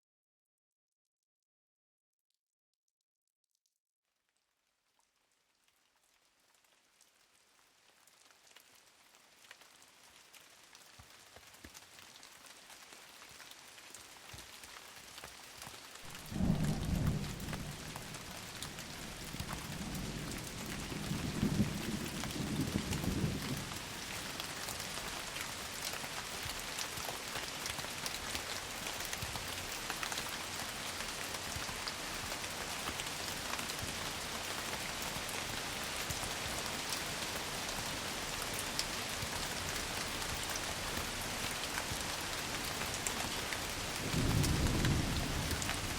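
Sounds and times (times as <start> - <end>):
heavy rain: 7.2 - 45.9
low rolls of thunder: 16.1 - 24.1, 44.0 - 45.9.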